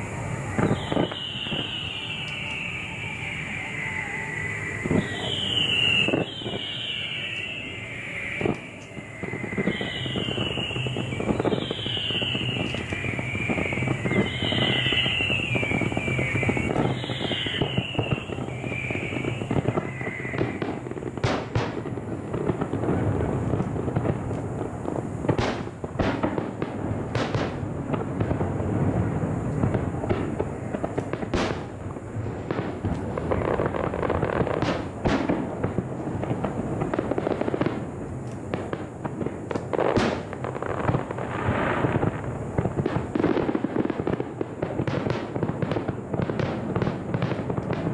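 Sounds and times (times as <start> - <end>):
fireworks crackling: 0.0 - 47.9
fireworks sharp bangs: 0.0 - 47.9.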